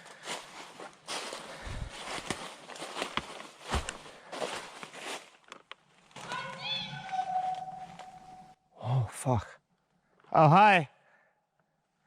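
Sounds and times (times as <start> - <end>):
footsteps crunching on forest floor: 0.0 - 8.4
twigs snapping: 2.1 - 4.0.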